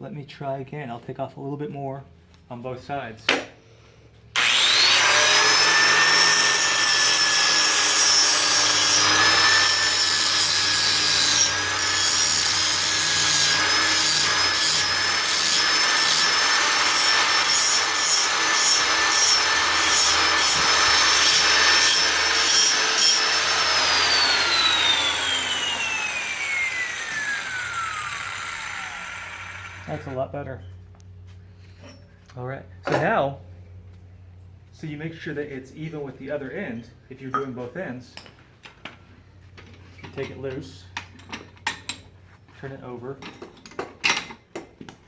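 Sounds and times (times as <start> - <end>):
grinder wheel winding down: 4.4 - 30.1
angle grinder grinding metal: 4.4 - 30.3.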